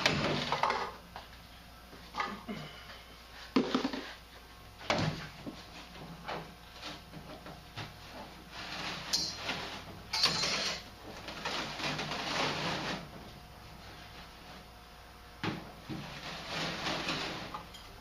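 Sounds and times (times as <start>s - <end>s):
insulation tearing and rustling: 8.1s - 9.9s, 11.0s - 13.3s, 15.9s - 17.7s.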